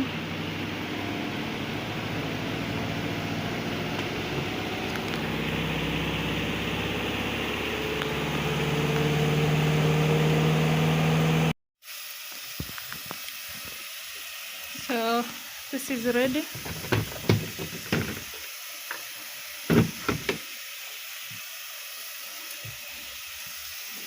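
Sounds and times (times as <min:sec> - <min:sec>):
spin dryer humming: 0:00.0 - 0:11.5, 0:14.6 - 0:20.6.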